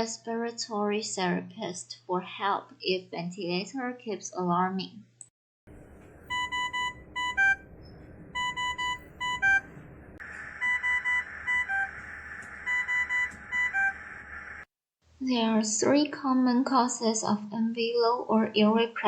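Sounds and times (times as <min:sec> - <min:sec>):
ventilator alarm beeping: 0:06.2 - 0:14.6.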